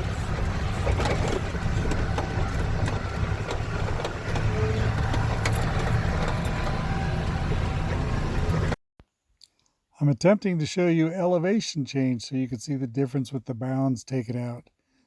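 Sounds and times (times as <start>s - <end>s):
rattles and knocks in truck cab: 0.0s - 7.0s
truck engine running: 0.0s - 8.8s.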